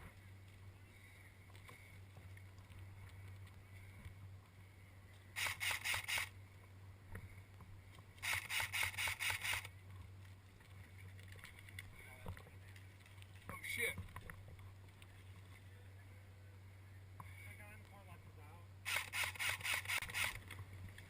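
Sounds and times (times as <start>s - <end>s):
airsoft gun rapid shots: 5.4s - 6.3s, 8.2s - 9.7s, 18.9s - 20.4s.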